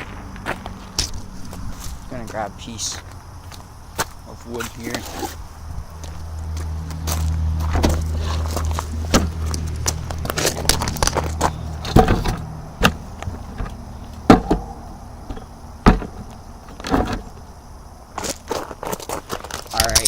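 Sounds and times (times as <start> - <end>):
bike being handled: 4.0 - 5.4, 7.0 - 20.0
low steady hum: 5.4 - 18.3
wood knocking and clattering: 7.6 - 17.5.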